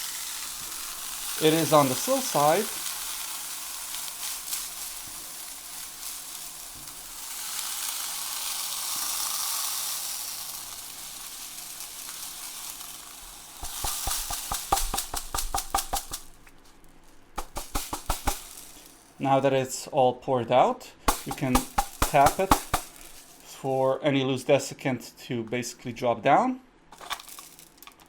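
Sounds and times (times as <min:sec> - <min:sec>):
beads pouring through plastic funnel: 0:00.0 - 0:19.2, 0:21.1 - 0:23.5, 0:27.0 - 0:28.0
clicks and rattles: 0:21.1 - 0:23.3.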